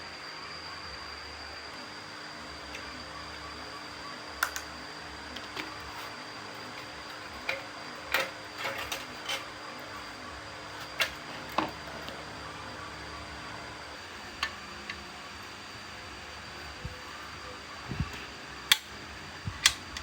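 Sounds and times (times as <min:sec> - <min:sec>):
tools and metal parts clicking: 0:06.8 - 0:09.6.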